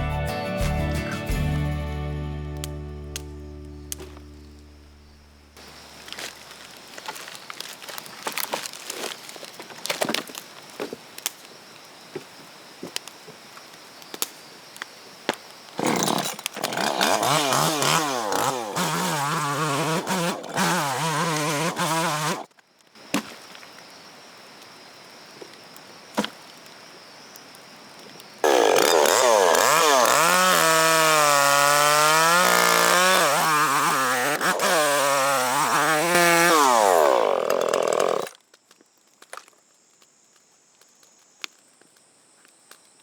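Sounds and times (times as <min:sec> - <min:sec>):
chainsaw engine revving: 0:15.8 - 0:22.5, 0:28.4 - 0:38.4
faint outdoor hiss: 0:18.0 - 0:28.5.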